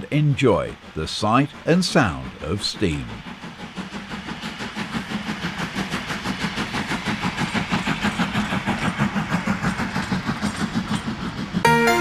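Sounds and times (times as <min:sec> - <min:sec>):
steam locomotive chuffing: 0:00.0 - 0:11.7
music: 0:11.6 - 0:12.0.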